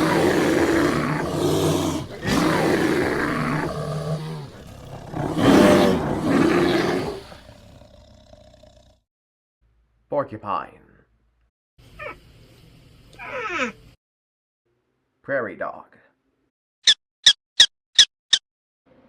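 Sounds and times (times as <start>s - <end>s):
polar bear roaring: 0.0s - 9.0s.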